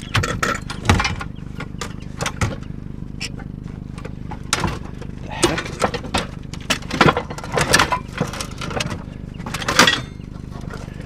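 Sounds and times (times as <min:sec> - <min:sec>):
car engine idling: 0:00.0 - 0:11.0
hard objects clattering: 0:04.0 - 0:11.0.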